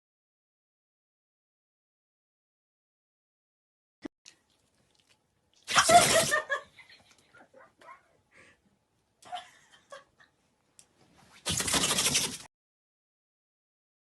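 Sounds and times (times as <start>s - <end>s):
dog sneezing: 5.7s - 6.5s, 11.4s - 12.4s.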